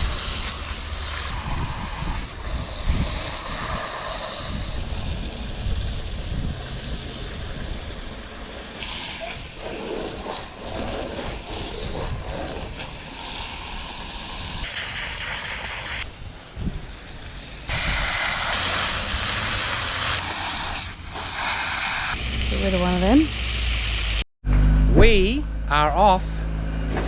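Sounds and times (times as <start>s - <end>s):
wind on microphone: 0.0s - 8.4s, 9.2s - 14.7s, 16.5s - 20.2s
garden hose spraying water: 0.0s - 24.3s.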